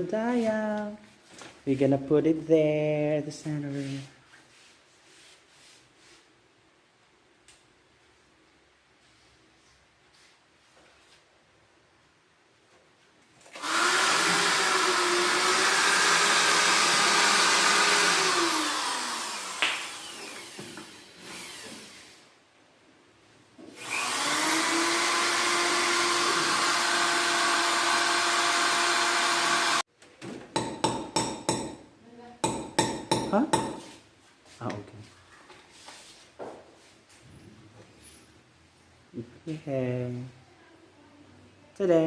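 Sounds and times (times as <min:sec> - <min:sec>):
electric drill running: 0:13.5 - 0:22.3, 0:23.7 - 0:29.8.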